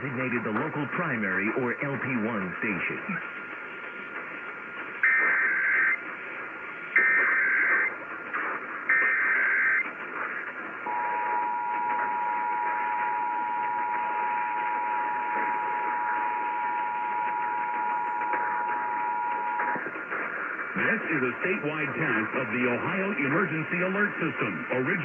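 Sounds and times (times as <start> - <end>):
radio static: 0.0 - 25.0
screeching data bursts: 5.0 - 6.0, 8.9 - 9.8.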